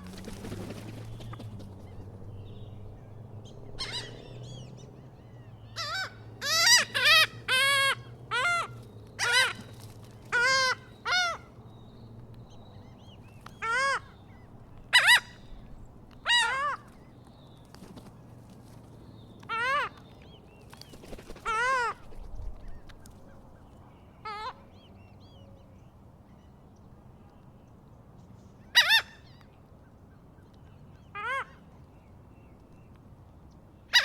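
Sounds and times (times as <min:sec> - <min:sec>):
large birds calling: 0:00.0 - 0:18.4.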